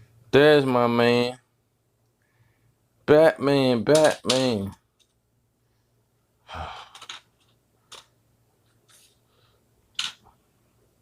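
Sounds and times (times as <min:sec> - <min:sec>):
person sighing: 0:06.4 - 0:07.2.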